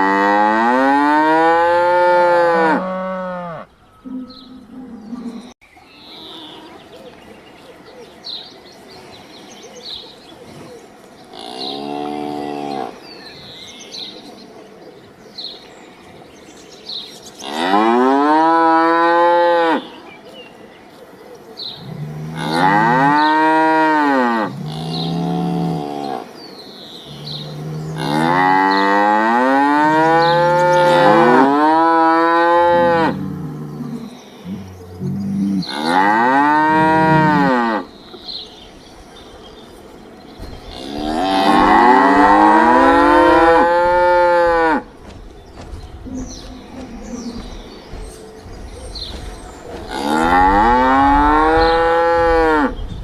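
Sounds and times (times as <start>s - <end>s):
cattle mooing: 0.0s - 5.6s, 27.1s - 37.9s, 40.7s - 44.9s, 49.9s - 52.7s.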